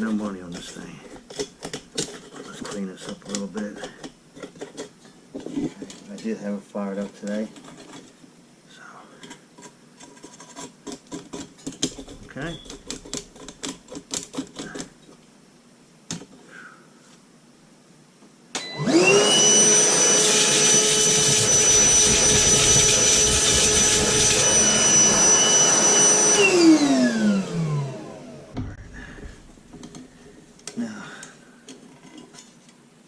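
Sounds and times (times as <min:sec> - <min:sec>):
vacuum cleaner running: 0:18.6 - 0:29.5.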